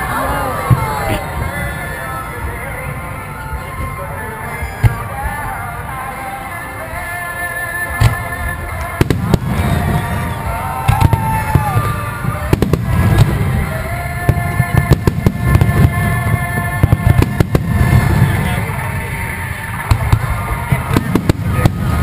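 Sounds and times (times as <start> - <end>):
music playing: 0.0 - 22.0
fireworks cracking and booming: 7.9 - 22.0.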